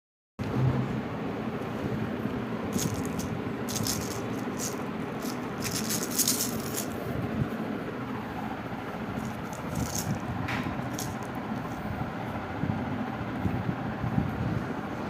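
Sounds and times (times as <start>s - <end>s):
rattling bursts: 2.7s - 7.0s, 9.1s - 11.4s.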